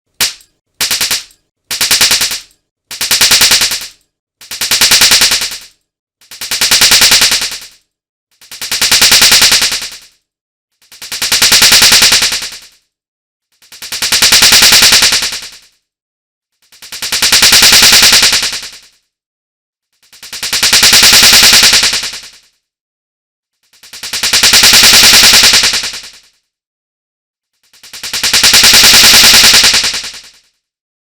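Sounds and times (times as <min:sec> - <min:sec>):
rapid hand slaps rattling: 0:00.1 - 0:10.2, 0:10.8 - 0:12.9, 0:13.6 - 0:15.8, 0:16.7 - 0:19.1, 0:20.0 - 0:22.6, 0:23.7 - 0:26.4, 0:27.7 - 0:30.5.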